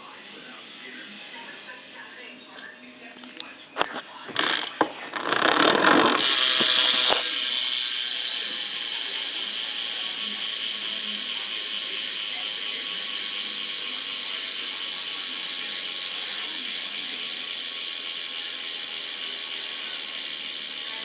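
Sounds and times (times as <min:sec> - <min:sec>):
bicycle hub freewheeling ratchet: 0:04.4 - 0:21.0.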